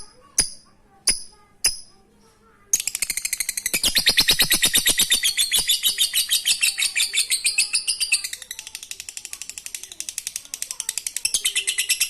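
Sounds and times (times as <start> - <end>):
bird chattering trill: 2.8 - 12.0.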